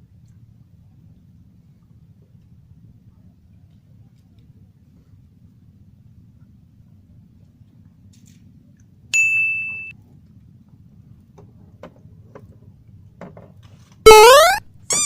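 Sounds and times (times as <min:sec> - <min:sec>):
rising whistle glide: 0:14.1 - 0:15.0.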